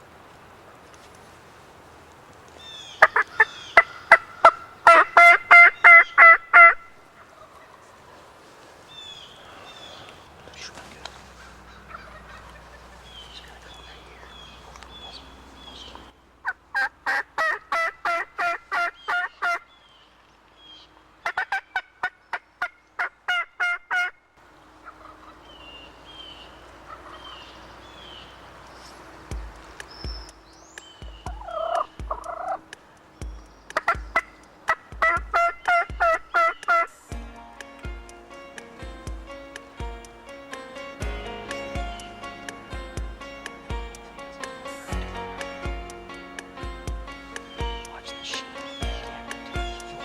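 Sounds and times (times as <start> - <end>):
turkey yelping: 2.6 - 8.0, 11.1 - 19.7, 21.2 - 24.1, 24.8 - 37.0
low thumps: 29.3 - 32.3, 37.1 - 50.0.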